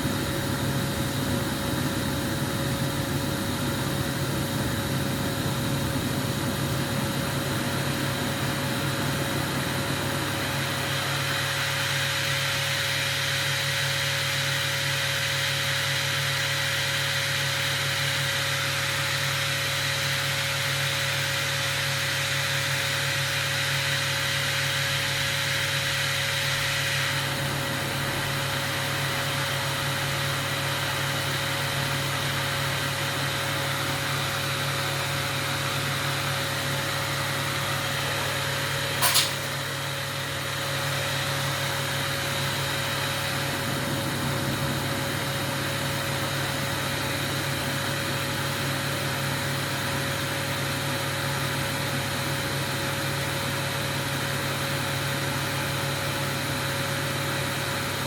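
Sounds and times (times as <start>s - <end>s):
gas burner flame hissing: 0.0s - 58.0s
sharp click: 39.0s - 39.5s.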